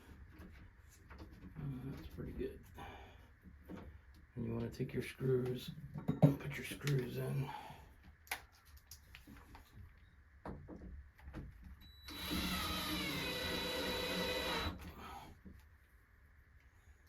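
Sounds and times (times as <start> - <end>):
cordless drill driving a screw: 12.0 - 14.9.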